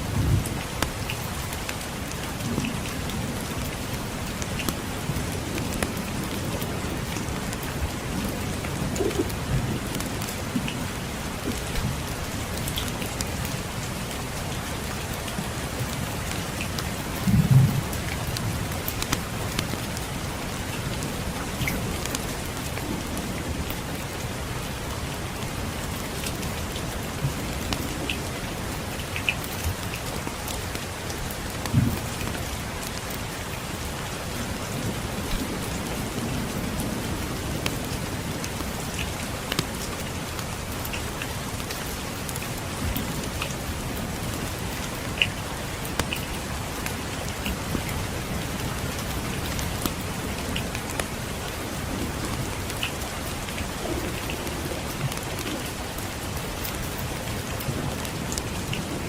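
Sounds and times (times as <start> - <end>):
steady rain: 0.0 - 59.0
distant thunder rumbling: 44.4 - 49.7
wood fire crackling: 44.7 - 48.2.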